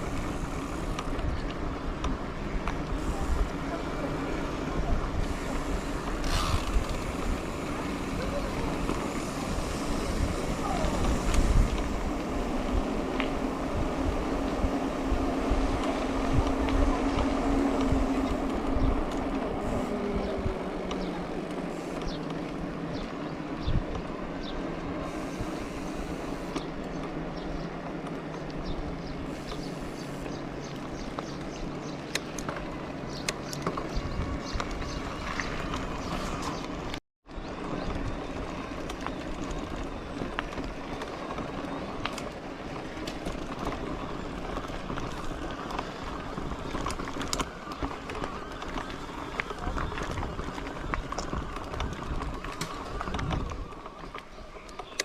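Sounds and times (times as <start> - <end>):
bicycle rolling: 0.0 - 55.0
wind: 0.0 - 55.0.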